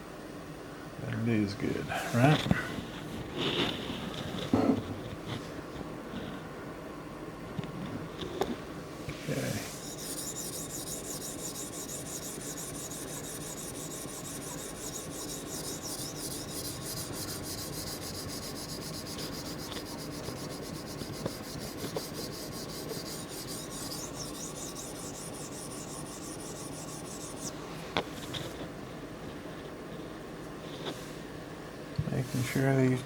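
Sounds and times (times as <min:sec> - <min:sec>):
knife scraping on sharpening stone: 0:09.7 - 0:27.5.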